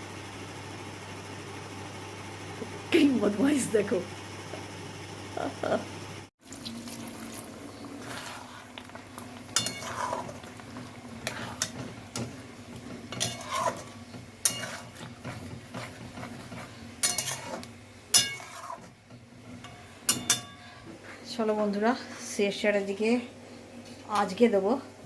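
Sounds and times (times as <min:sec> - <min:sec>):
spoon scraping in pan: 0:07.1 - 0:20.8
metal utensils and pots clinking: 0:08.0 - 0:20.9
sharp ringing metal clanks: 0:19.6 - 0:20.6.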